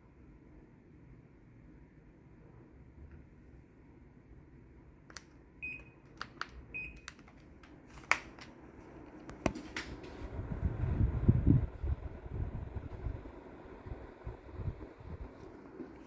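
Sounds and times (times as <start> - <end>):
wind rumble on microphone: 10.1 - 15.6.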